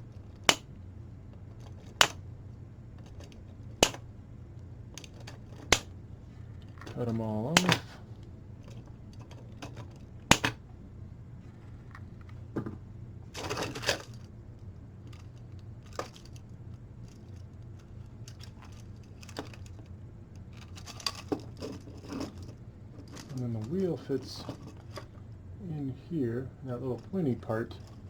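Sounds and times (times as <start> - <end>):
plastic parts rustling: 1.4 - 2.2, 2.9 - 4.1, 4.8 - 10.6, 13.3 - 14.3, 15.0 - 25.2
cutters snipping plastic: 6.9 - 8.0, 10.3 - 10.6.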